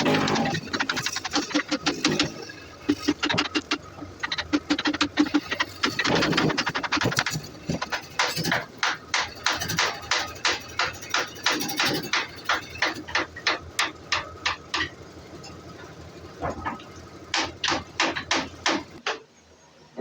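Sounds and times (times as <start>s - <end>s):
sharp knocks: 0.0s - 19.3s.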